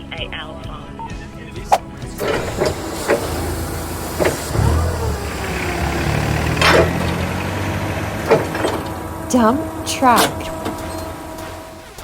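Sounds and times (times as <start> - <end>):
truck engine idling: 0.0 - 12.0.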